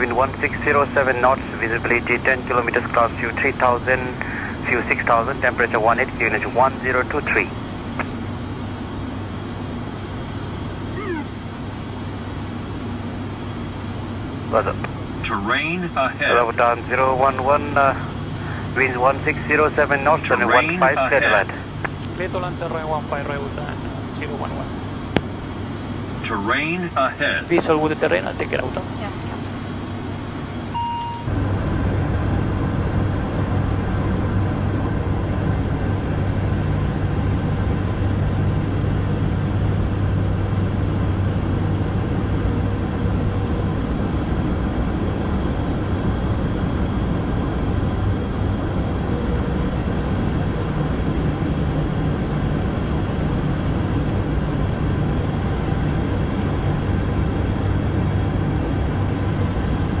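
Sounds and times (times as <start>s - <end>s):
turboprop engines droning: 0.0s - 60.0s
short beep: 30.8s - 31.3s.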